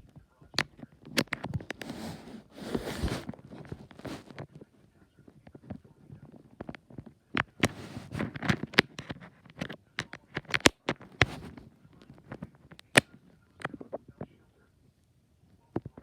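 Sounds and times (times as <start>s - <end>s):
sharp clicks and knocks: 6.6s - 14.0s.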